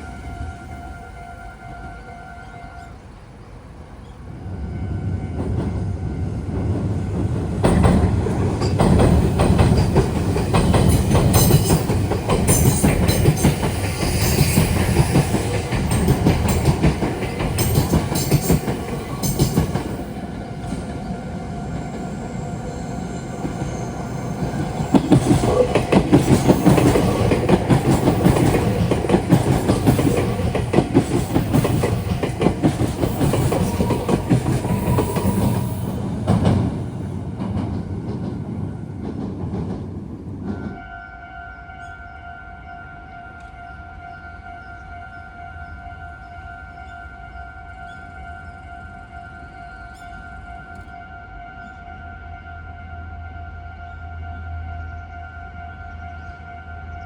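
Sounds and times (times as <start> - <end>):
train wheels clattering over rails: 6.5 - 40.8.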